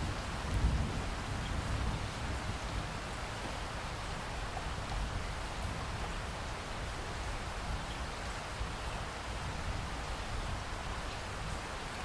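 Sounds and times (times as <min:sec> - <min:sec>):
low rumble of thunder: 0:00.0 - 0:03.2
heavy rain hissing and pattering: 0:00.0 - 0:12.0.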